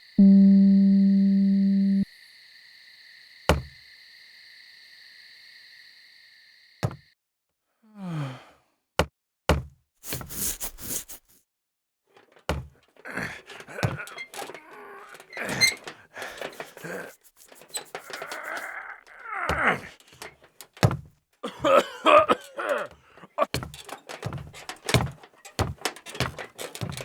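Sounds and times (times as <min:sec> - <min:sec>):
held electronic tone: 0:00.2 - 0:02.0
sharp knocks and thuds: 0:03.5 - 0:03.8, 0:06.8 - 0:07.0, 0:09.5 - 0:10.3, 0:12.2 - 0:18.7, 0:19.4 - 0:27.0
rustling: 0:12.1 - 0:21.1, 0:22.3 - 0:27.0
falling creak: 0:12.1 - 0:27.0.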